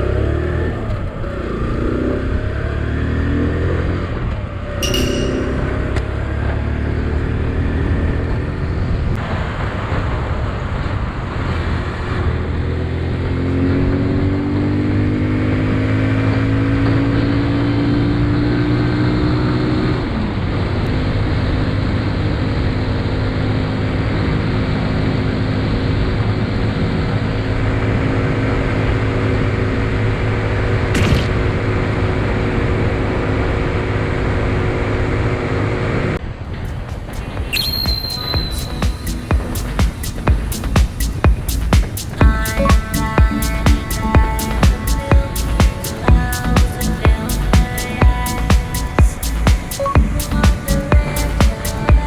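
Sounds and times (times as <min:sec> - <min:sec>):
motorcycle engine running: 0:38.4 - 0:52.0.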